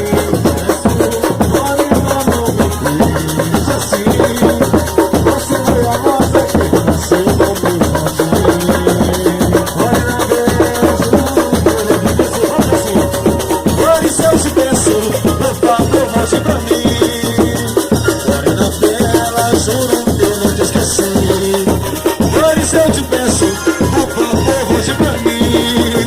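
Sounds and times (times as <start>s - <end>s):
drums and hand percussion: 0.0s - 26.0s
melodic line: 9.8s - 26.0s.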